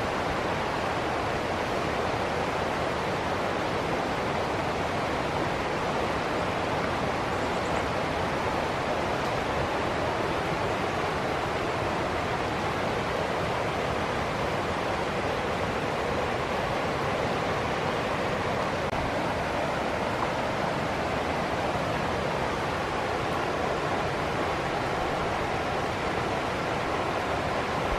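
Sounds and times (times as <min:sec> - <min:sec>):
rushing water: 0:00.0 - 0:27.9.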